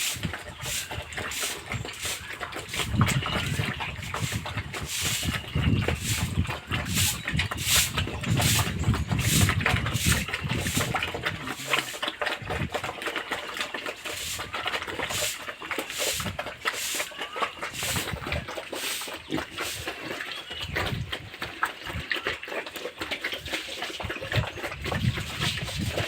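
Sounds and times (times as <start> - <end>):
pigs grunting: 6.0 - 24.8.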